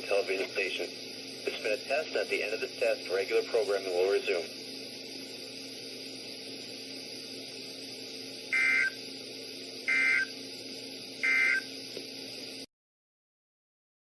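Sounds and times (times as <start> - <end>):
radio hiss and hum: 0.0 - 12.7
short digital data bursts: 8.5 - 9.0, 9.9 - 10.4, 11.2 - 11.8.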